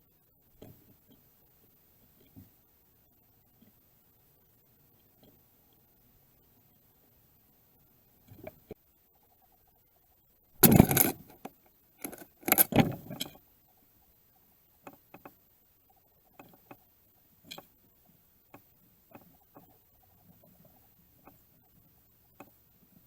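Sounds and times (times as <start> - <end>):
faint taps and pecks: 0.5 - 1.3, 2.0 - 2.6, 14.8 - 23.0
clattering in bird feeder bowl: 10.6 - 13.4.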